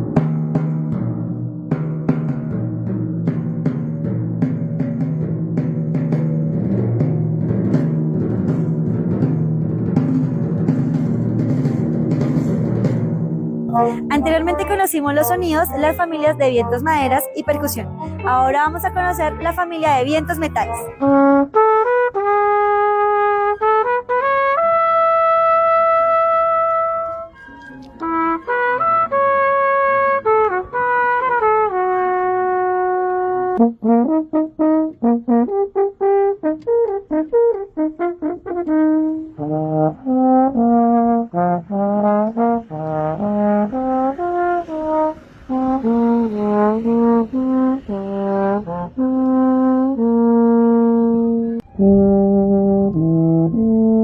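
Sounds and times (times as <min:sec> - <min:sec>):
high brass melody: 0:13.7 - 0:54.0
low brass melody: 0:13.7 - 0:54.0.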